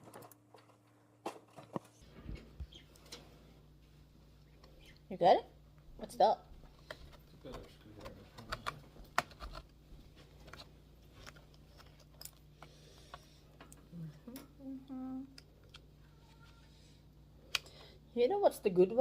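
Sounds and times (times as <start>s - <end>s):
person humming: 13.9s - 15.5s.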